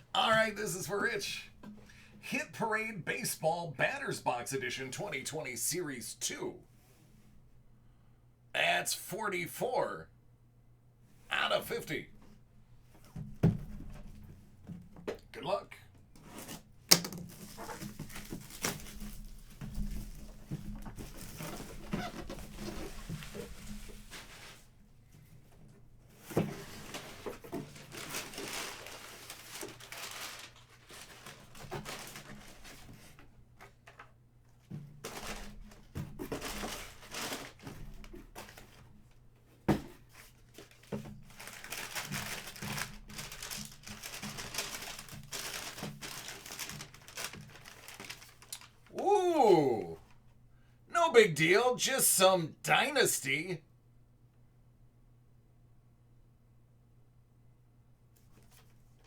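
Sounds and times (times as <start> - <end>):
plastic and paper crinkling: 17.2 - 21.8, 26.7 - 33.2, 35.0 - 38.8, 40.4 - 48.9
packaging tearing: 41.4 - 48.7.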